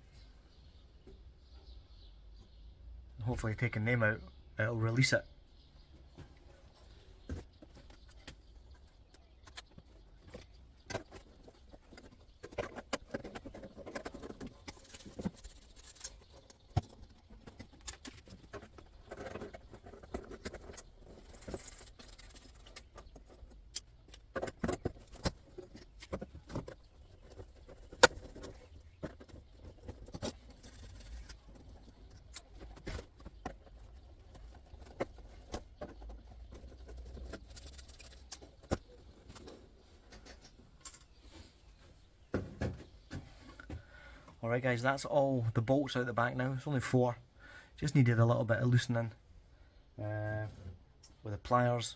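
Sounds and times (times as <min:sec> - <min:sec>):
metallic clicks and scraping of bolts: 0:07.8 - 0:41.2.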